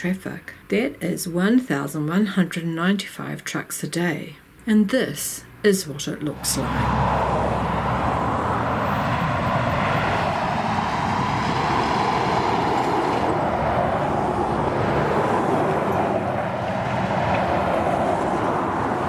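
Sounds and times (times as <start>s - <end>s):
highway traffic: 5.2s - 19.0s
heavy trucks passing: 6.2s - 19.0s.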